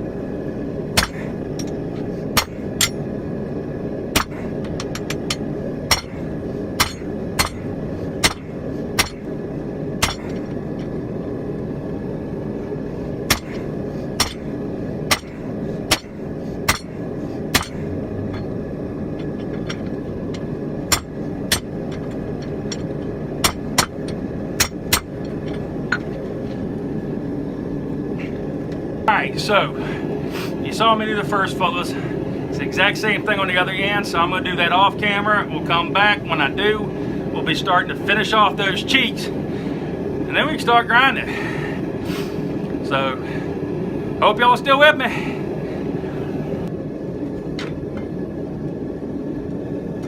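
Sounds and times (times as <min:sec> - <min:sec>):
low rumble: 0:00.0 - 0:44.2
hammer striking hot steel on anvil: 0:01.0 - 0:03.0, 0:04.1 - 0:09.3, 0:10.0 - 0:10.5, 0:13.3 - 0:18.5, 0:19.3 - 0:26.1.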